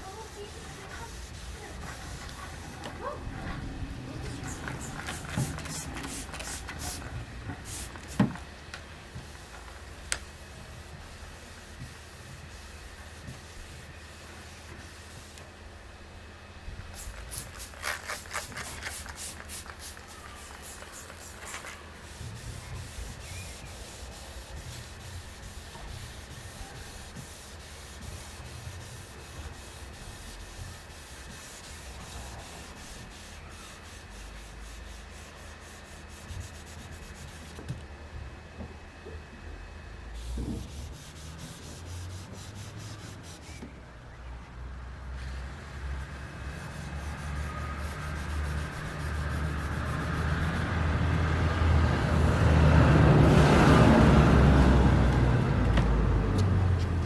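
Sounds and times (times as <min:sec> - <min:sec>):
sandpaper rubbing on paintwork: 0:00.0 - 0:02.8, 0:04.3 - 0:08.2, 0:09.2 - 0:15.4, 0:16.9 - 0:37.6, 0:40.2 - 0:43.6, 0:46.4 - 0:50.8.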